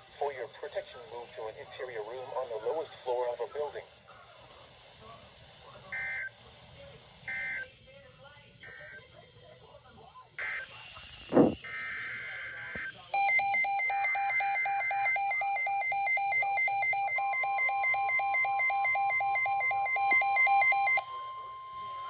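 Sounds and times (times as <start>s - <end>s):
steady warning tone: 10.4s - 22.0s
two-pitch electronic warble alarm: 10.4s - 22.0s.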